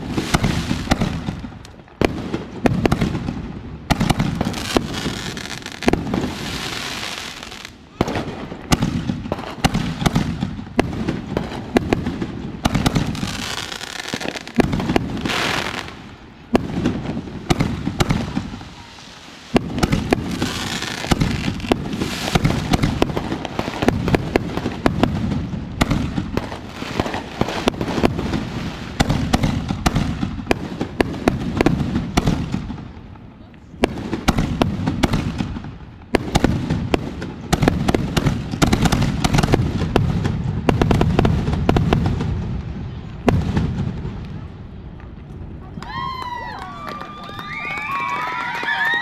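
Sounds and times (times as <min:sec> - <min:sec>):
fireworks banging and crackling: 0:00.0 - 0:49.0
fireworks hissing: 0:03.9 - 0:30.4.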